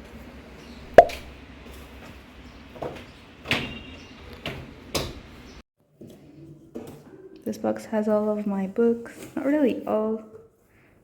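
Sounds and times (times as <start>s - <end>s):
sharp knock: 1.0s - 1.3s.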